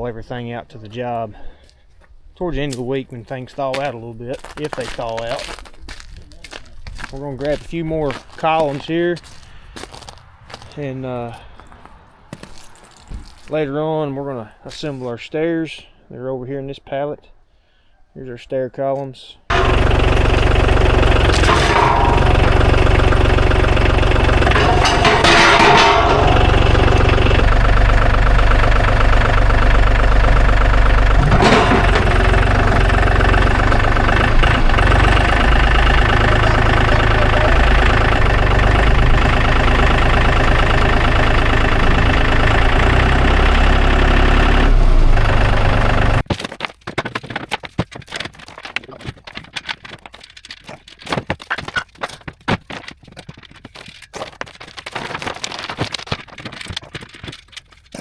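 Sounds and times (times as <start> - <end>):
engine running: 19.5 - 46.2.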